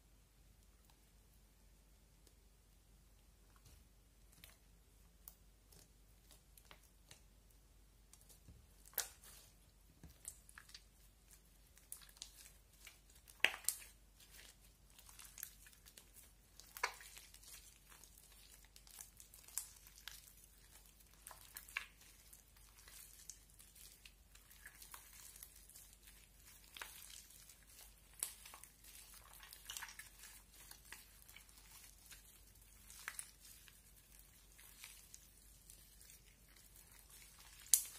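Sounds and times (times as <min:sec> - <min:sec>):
slime crackling and popping: 0:08.1 - 0:37.9.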